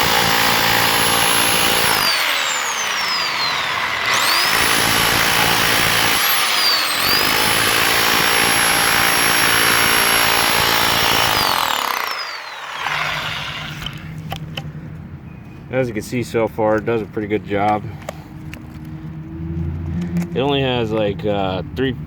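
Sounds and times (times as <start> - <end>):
rotary hammer chipping concrete: 0.0 - 14.0.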